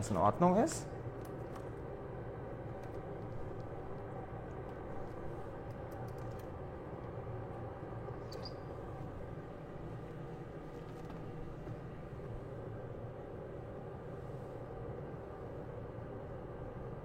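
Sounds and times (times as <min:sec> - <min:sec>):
low background hum: 0:00.0 - 0:17.0
high chirp: 0:08.2 - 0:08.8.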